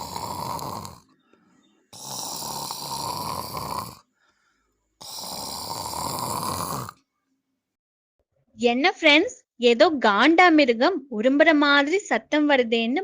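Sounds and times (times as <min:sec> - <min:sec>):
person snoring loudly: 0:00.0 - 0:01.1, 0:01.9 - 0:04.1, 0:05.0 - 0:07.0.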